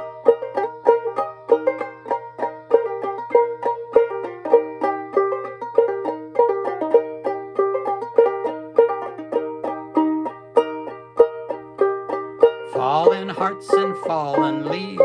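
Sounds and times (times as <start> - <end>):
ukulele plucked clawhammer style: 0.0 - 15.0.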